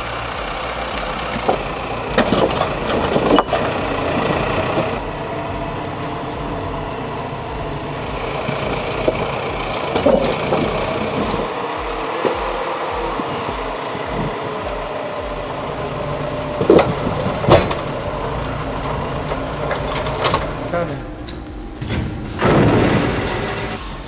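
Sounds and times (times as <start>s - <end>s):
tractor engine running: 0.0s - 24.0s.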